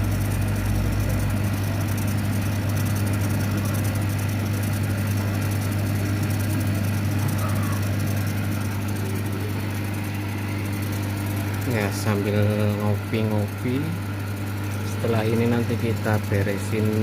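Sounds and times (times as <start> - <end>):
laser cutter electrical hum: 0.0 - 17.0.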